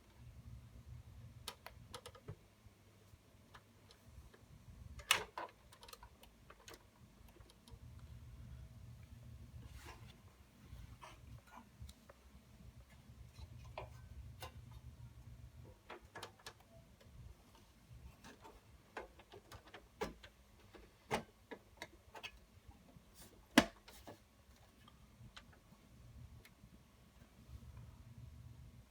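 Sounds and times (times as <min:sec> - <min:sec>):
computer parts clicking and tapping: 0:01.4 - 0:02.4, 0:05.0 - 0:07.8.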